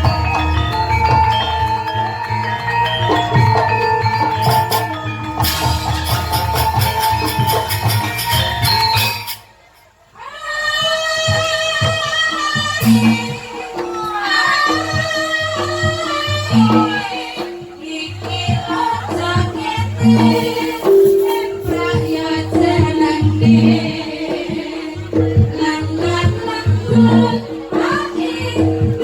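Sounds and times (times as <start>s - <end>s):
drum-led beat: 0.0s - 9.6s, 10.8s - 29.0s.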